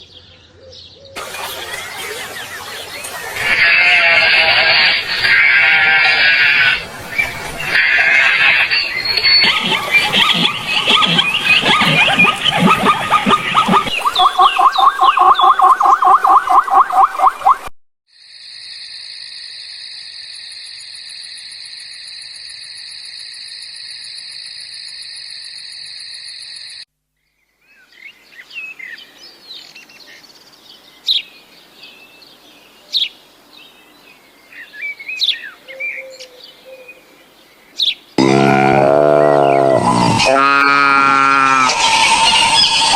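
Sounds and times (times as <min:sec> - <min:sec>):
wild birds chirping: 0:00.0 - 0:17.2, 0:27.4 - 0:42.9.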